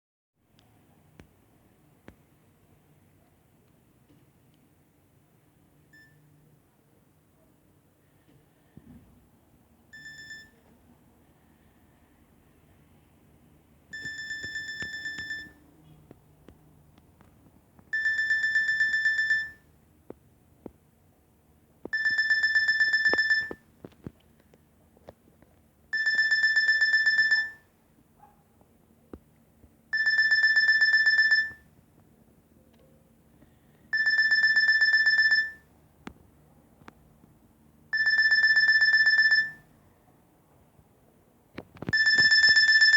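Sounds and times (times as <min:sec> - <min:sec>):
mobile phone ringing: 0:09.9 - 0:10.6, 0:13.9 - 0:15.6, 0:17.9 - 0:19.7, 0:21.9 - 0:23.6, 0:25.9 - 0:27.7, 0:29.9 - 0:31.7, 0:33.9 - 0:35.7, 0:37.9 - 0:39.7, 0:41.9 - 0:42.9.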